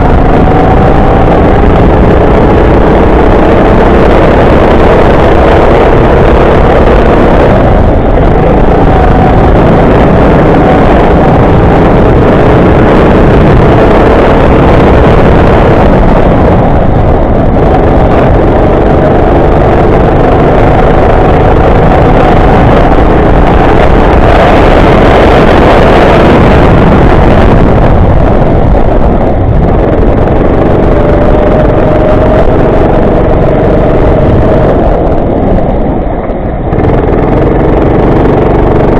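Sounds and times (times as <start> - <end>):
go-kart engine revving: 0.0 - 28.5, 36.7 - 38.9.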